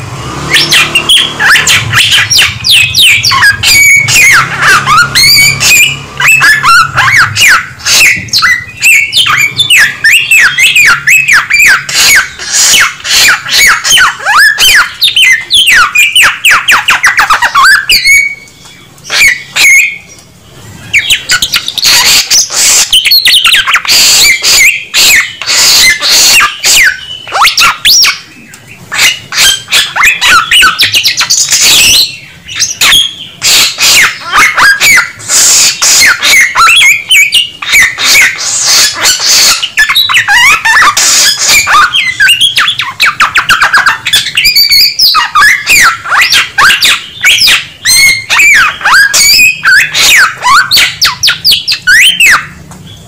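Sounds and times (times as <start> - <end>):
songbird singing: 0.0 - 53.0.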